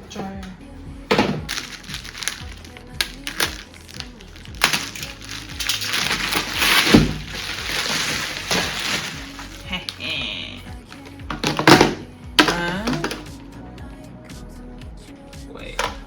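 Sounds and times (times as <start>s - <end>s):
background music: 0.0s - 16.0s
packaging crinkling: 1.4s - 10.1s.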